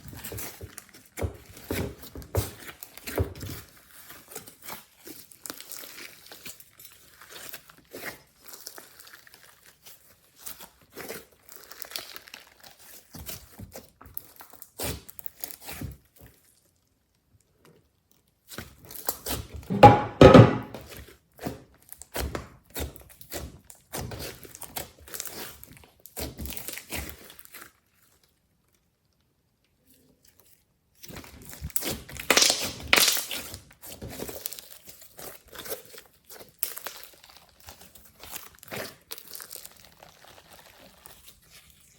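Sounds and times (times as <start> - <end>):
slime squished by hand: 0.2 - 15.9, 31.1 - 41.9.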